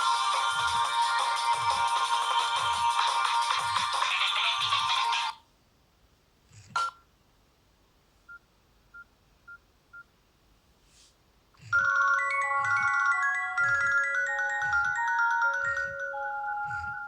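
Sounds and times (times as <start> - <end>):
polyphonic ringtone melody: 0.0 - 5.3, 11.7 - 17.0.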